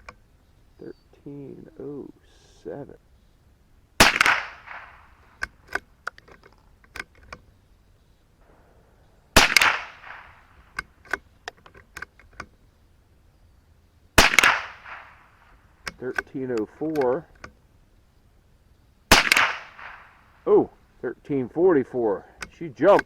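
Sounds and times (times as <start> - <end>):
rifle shots: 4.0 - 5.4, 8.4 - 10.8, 14.2 - 15.6, 19.1 - 20.3.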